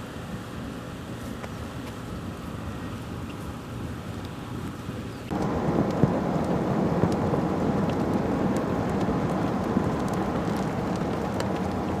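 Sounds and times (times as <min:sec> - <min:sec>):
rain: 0:00.0 - 0:12.0
wind: 0:00.0 - 0:12.0
raindrops tapping: 0:05.3 - 0:12.0.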